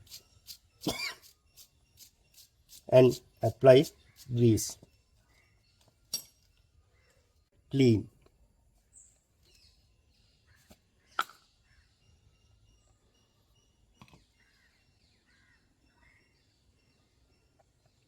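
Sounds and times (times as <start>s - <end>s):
faint bird chirps: 0.0s - 7.5s, 8.8s - 18.0s.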